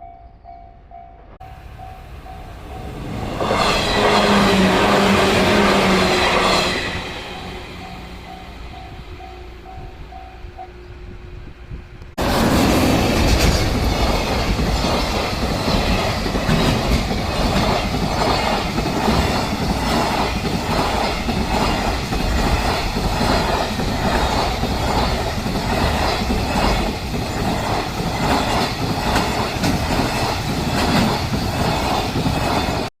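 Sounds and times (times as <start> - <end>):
faint level crossing bell: 0.0 - 3.2
train wheels clacking over rail joints: 12.2 - 32.9.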